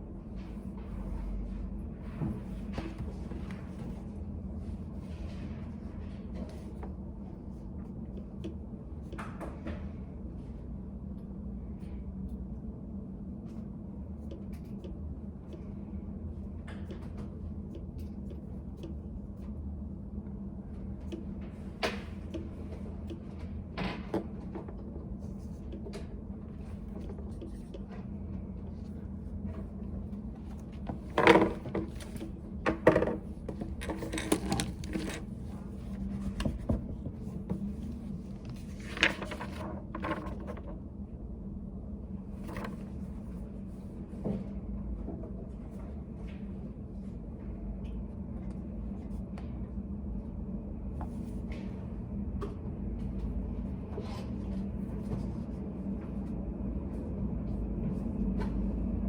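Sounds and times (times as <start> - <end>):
steady low room hum: 0.0 - 59.0
knocks and rustles: 30.4 - 40.8.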